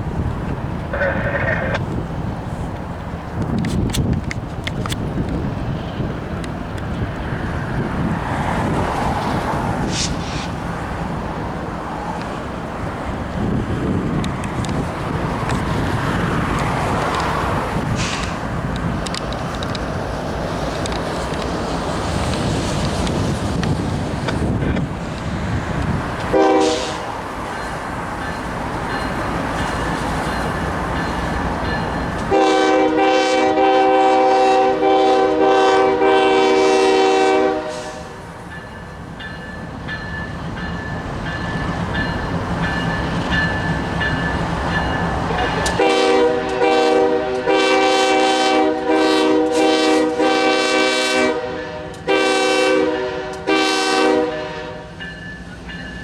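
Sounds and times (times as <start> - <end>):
train rumbling past: 0.0 - 56.0
locomotive air horn blasts: 26.3 - 27.2, 32.3 - 38.2, 45.7 - 55.0.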